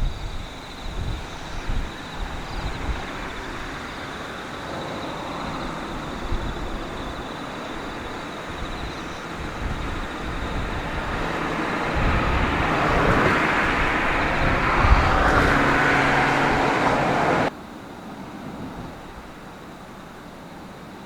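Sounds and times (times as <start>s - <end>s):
motor vehicle passing close: 2.3s - 17.5s.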